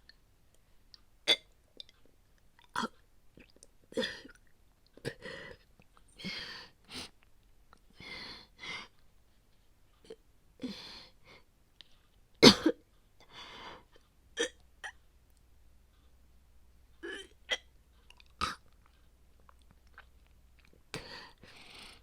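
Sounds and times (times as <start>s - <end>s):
woman retching and gagging: 14.4s - 15.0s, 17.0s - 18.7s.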